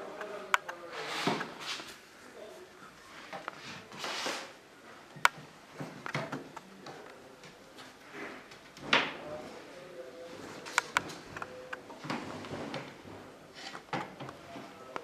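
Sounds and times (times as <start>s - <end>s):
cabinet parts clicking and knocking: 5.2s - 7.6s, 12.0s - 14.4s.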